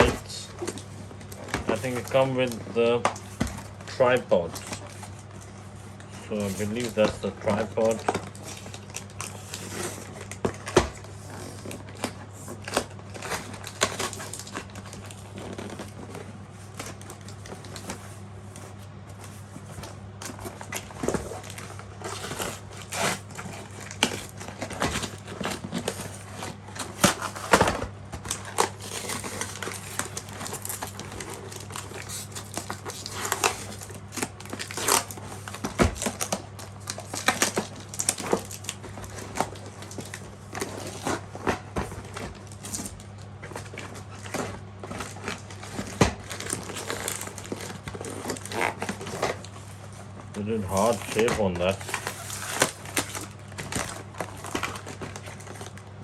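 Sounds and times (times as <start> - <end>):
packaging crinkling and rustling: 0.0 - 56.0
steady low hum: 0.0 - 56.0.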